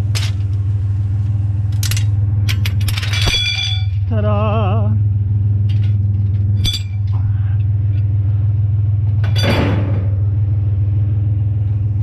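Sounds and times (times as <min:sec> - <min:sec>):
metal clatter: 0:01.7 - 0:04.1, 0:05.6 - 0:07.2, 0:09.1 - 0:10.2
ringing metal clink: 0:02.8 - 0:04.0, 0:06.6 - 0:07.1.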